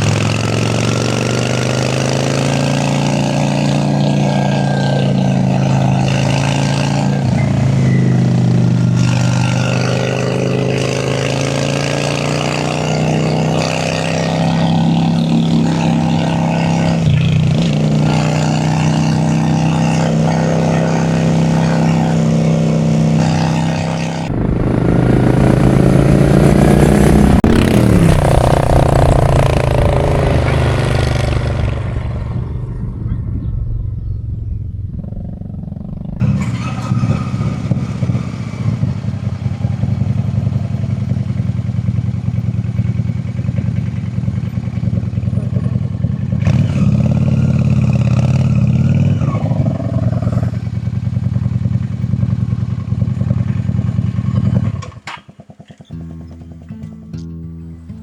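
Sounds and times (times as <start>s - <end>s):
motorcycle engine running: 0.0s - 58.0s
wind rush: 24.2s - 36.2s.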